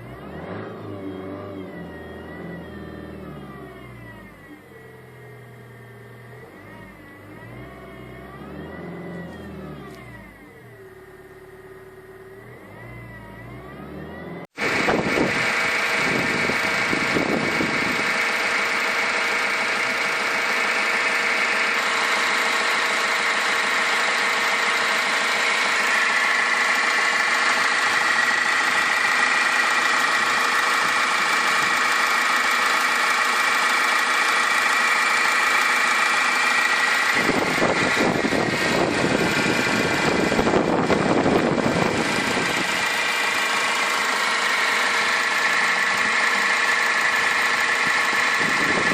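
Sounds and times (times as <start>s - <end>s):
diesel engine revving: 0.0s - 48.9s
high-pitched whirring with clatter: 12.4s - 48.9s.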